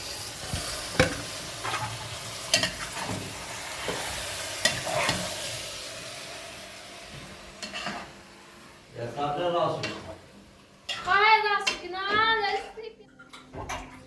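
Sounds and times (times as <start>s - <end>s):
food sizzling in a pan: 0.0s - 12.2s.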